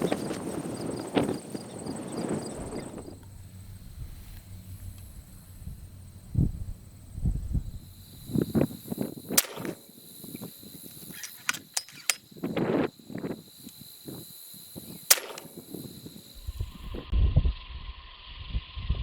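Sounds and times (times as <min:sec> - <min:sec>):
handling or wind noise: 0:00.0 - 0:14.2, 0:14.8 - 0:17.1
air rifle firing: 0:07.8 - 0:12.2, 0:15.1 - 0:16.3.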